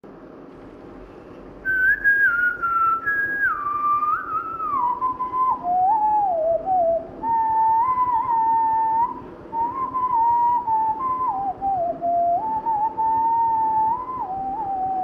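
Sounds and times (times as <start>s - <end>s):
person whistling a melody: 1.6s - 15.0s.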